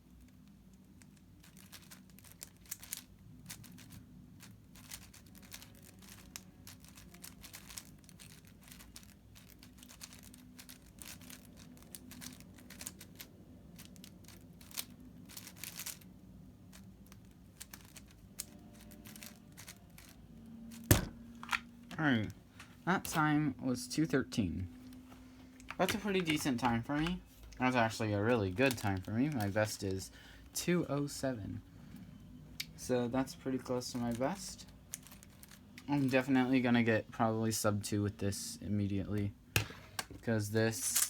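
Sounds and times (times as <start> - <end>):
steady low hum: 0.0 - 41.0
plastic puzzle cube clicking: 0.4 - 16.0, 16.7 - 20.2.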